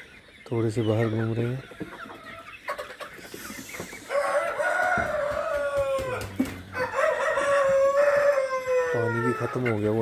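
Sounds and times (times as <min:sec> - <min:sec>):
rooster crowing: 0:04.1 - 0:09.6.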